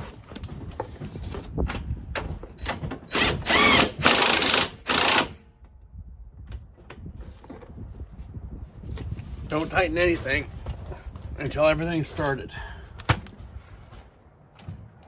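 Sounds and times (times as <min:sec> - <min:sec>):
power tool driving bolts: 0:02.6 - 0:05.5.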